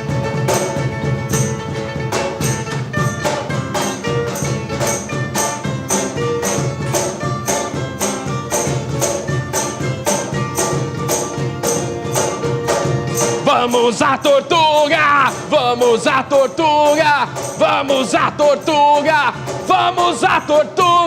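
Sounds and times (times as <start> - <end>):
folk band instrumental: 0.0 - 21.0
high percussion strokes: 0.0 - 21.0.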